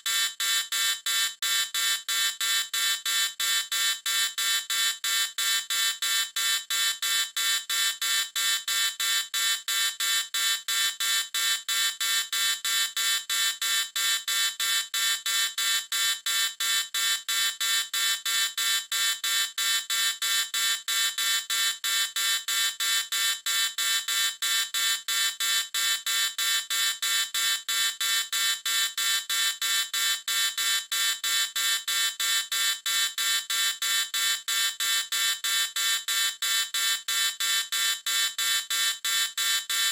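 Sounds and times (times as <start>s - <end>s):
pulsing electronic alarm buzz: 0.1s - 3.2s, 9.1s - 16.8s, 32.9s - 39.9s.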